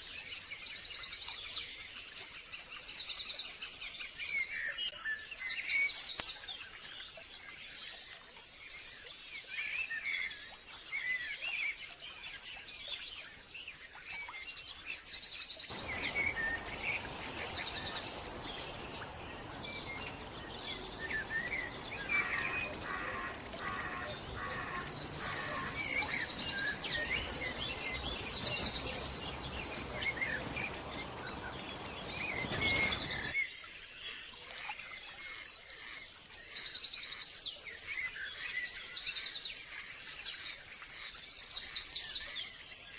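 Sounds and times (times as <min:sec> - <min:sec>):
steady rushing noise: 0:15.7 - 0:33.3
wild birds chirping and trilling: 0:15.7 - 0:33.4.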